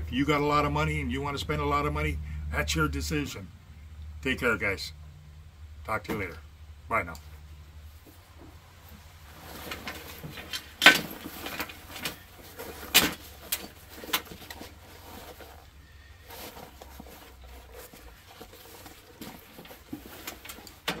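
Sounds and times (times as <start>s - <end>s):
rustling handling noise: 7.2s - 21.0s.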